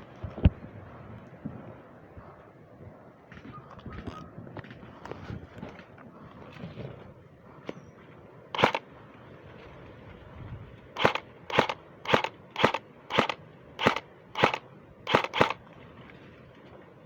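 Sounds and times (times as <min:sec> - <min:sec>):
airsoft gun shots: 0:08.6 - 0:08.8, 0:11.0 - 0:15.6.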